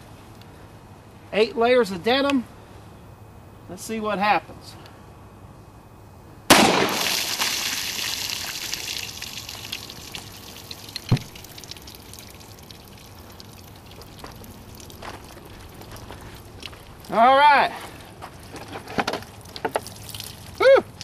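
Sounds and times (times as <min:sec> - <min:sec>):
pistol shot: 0:06.5 - 0:07.2
water splashing and pouring: 0:06.8 - 0:17.1, 0:19.4 - 0:20.6.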